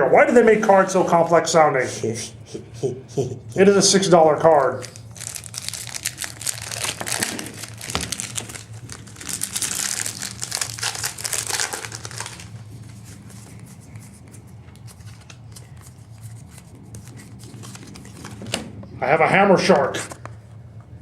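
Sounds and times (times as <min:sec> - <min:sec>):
wrappers crinkling and tearing: 0:04.6 - 0:18.6
cards clicking and rustling: 0:04.8 - 0:18.7.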